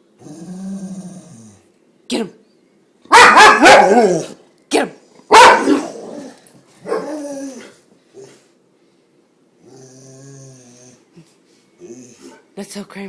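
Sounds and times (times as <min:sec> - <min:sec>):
dog yelp: 0:03.1 - 0:04.3, 0:05.3 - 0:06.0
dog calling: 0:03.1 - 0:04.4, 0:05.3 - 0:06.0.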